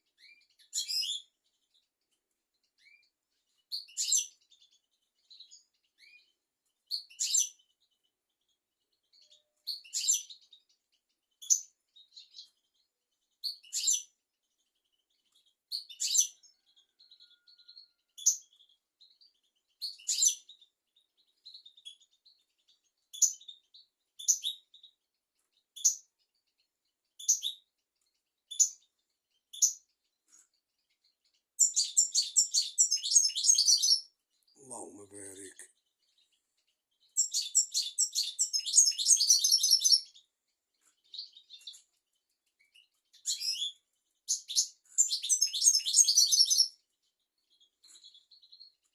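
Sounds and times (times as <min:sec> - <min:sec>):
goldfinch singing: 0:30.8 - 0:48.9.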